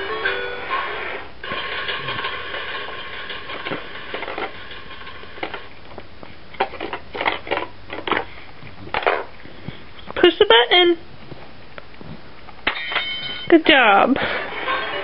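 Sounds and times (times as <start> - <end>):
toy train motor whine: 0.0 - 5.6
plastic clicks and clatters: 5.4 - 8.3.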